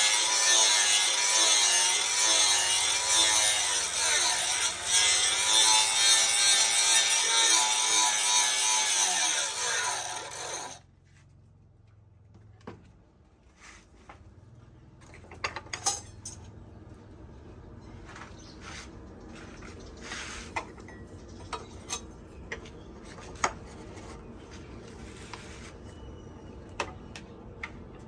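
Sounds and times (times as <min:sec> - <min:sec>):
electric grinder running: 0:00.0 - 0:10.8.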